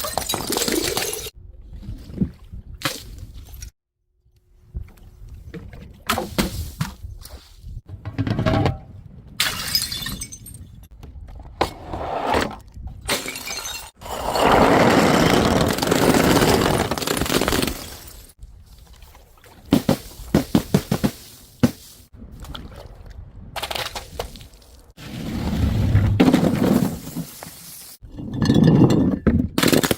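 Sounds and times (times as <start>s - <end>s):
glass bottles smashing: 9.4s - 10.6s, 13.1s - 14.0s.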